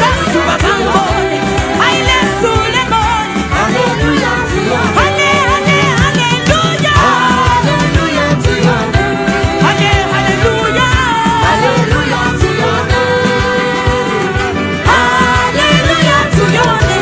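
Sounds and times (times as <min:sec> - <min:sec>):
gospel worship music: 0:00.0 - 0:17.0
person singing: 0:00.0 - 0:17.0
steady drum beat: 0:00.0 - 0:17.0.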